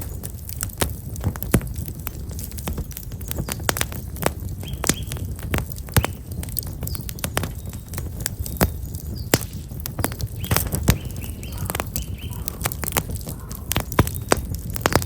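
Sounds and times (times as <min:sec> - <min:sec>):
campfire crackling and popping: 0:00.0 - 0:15.0
bird chirping: 0:04.6 - 0:05.3, 0:05.9 - 0:09.4, 0:10.0 - 0:14.7.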